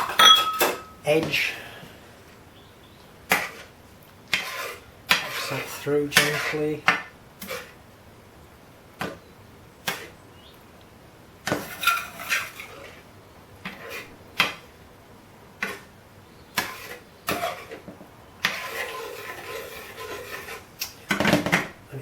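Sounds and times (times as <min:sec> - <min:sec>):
utensil scraping a pan: 0:03.3 - 0:07.8, 0:09.8 - 0:10.2, 0:11.5 - 0:14.6, 0:15.6 - 0:15.9, 0:16.5 - 0:21.7.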